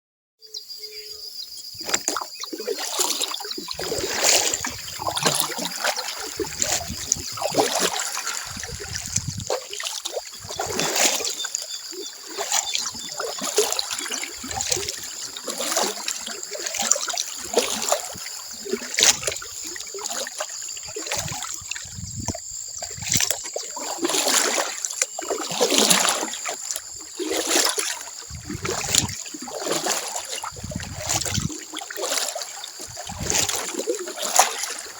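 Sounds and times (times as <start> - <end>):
dawn wildlife chorus: 0.5 - 8.7
kayak paddle splashing: 1.2 - 34.9.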